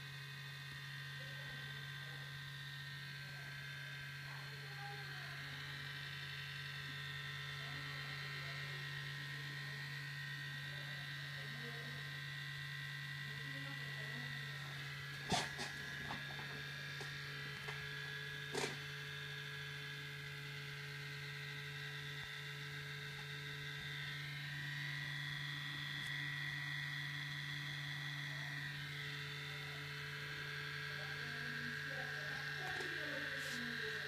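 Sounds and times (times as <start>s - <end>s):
laptop buzzing hum with whine: 0.0s - 34.0s.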